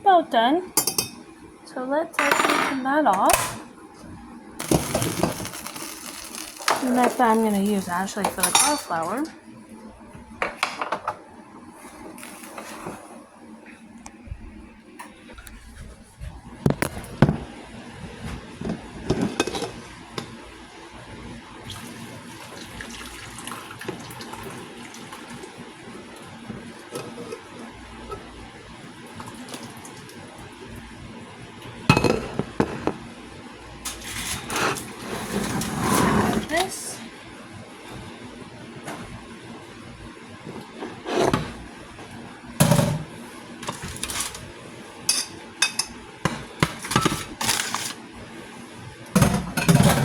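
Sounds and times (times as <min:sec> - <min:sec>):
dishes and utensils clattering: 0:00.8 - 0:01.2, 0:02.2 - 0:03.6, 0:04.6 - 0:09.3, 0:45.1 - 0:48.0, 0:49.2 - 0:50.0.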